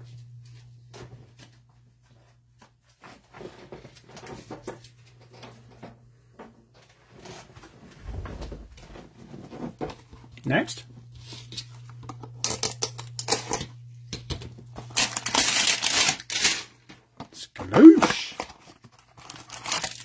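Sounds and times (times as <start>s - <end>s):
steady low hum: 0.0s - 2.9s, 7.8s - 16.0s.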